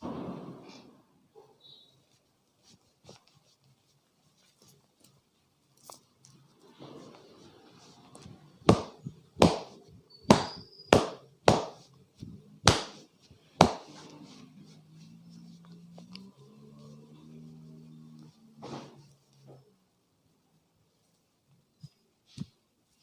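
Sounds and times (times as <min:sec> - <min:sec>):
soft rubbing: 0:01.8 - 0:23.0
hands slapping and chopping on body: 0:08.6 - 0:11.9, 0:12.6 - 0:14.0.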